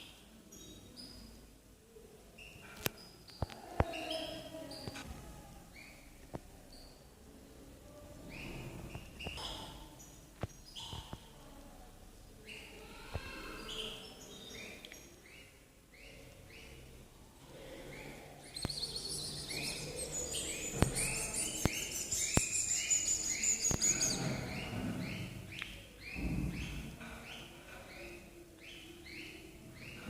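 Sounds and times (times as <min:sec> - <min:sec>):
rapid high twittering birdsong: 0:00.0 - 0:01.5, 0:02.4 - 0:05.0, 0:08.2 - 0:11.3, 0:13.4 - 0:30.0
birds chirping: 0:02.3 - 0:11.4, 0:12.4 - 0:30.0.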